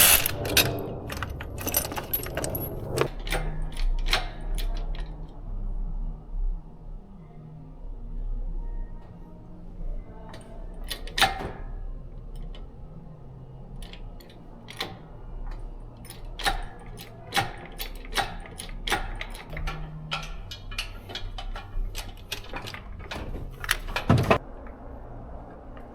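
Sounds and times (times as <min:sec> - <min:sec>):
sharp metallic clicks and clinks: 0:00.0 - 0:04.2.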